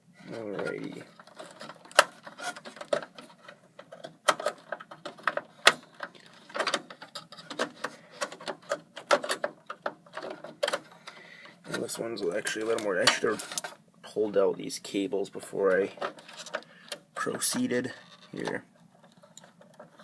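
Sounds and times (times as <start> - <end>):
plastic and metal clicks and rattles: 0.6 - 11.8.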